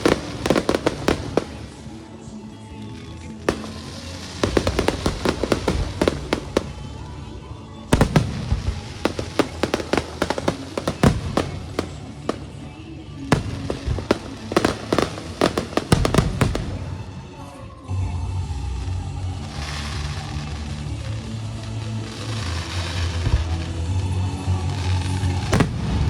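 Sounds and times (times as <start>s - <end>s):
firecrackers banging: 0.0s - 2.4s, 3.0s - 17.5s.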